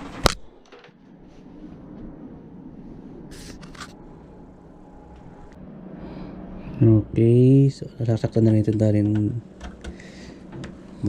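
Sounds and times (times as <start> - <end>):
low steady hum: 0.0 - 11.0
cable scraping: 3.3 - 4.0.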